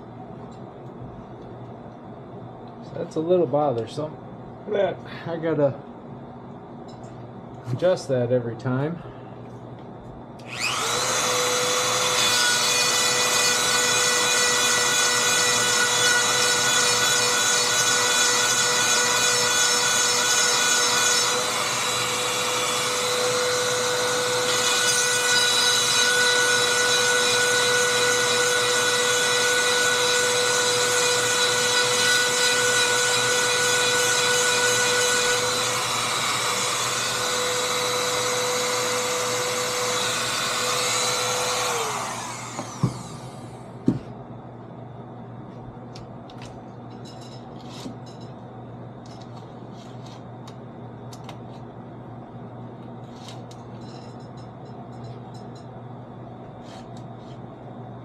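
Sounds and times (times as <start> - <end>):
rotary tool whining: 10.4 - 43.6.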